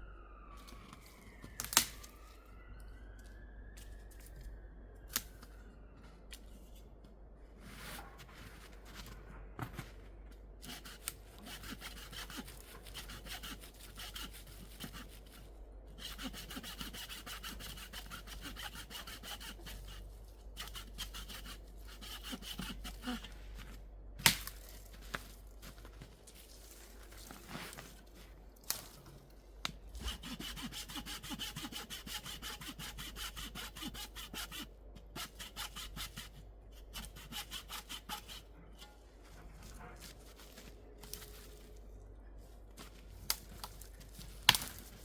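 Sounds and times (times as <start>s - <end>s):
hand saw cutting wood: 10.6s - 15.3s, 16.0s - 20.0s, 20.6s - 23.3s, 30.0s - 36.3s, 36.9s - 38.5s.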